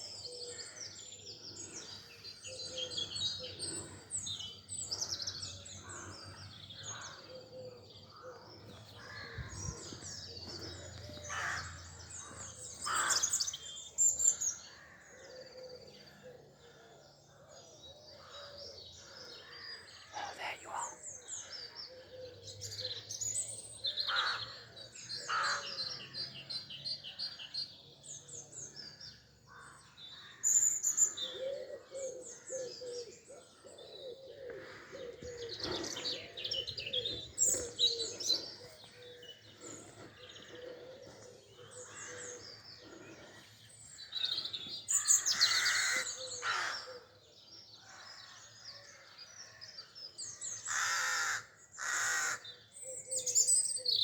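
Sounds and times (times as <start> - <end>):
songbirds singing and chirping: 0.0 - 54.0.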